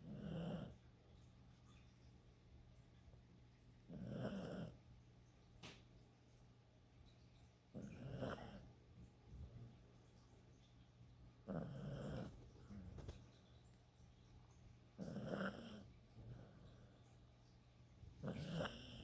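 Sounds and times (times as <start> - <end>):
dog snoring: 0.0 - 0.8, 3.9 - 4.8, 7.7 - 8.7, 11.4 - 13.2, 15.0 - 17.0, 18.2 - 19.0.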